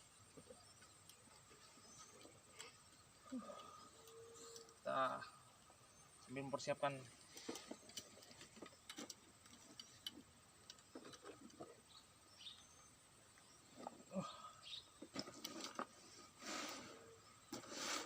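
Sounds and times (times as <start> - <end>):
bird chirps: 11.8 - 15.0.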